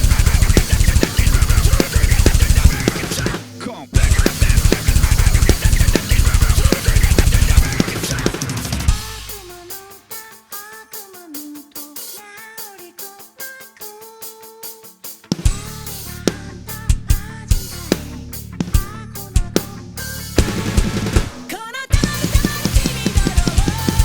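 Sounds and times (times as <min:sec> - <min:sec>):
band with heavy drum kit: 0:00.0 - 0:24.0.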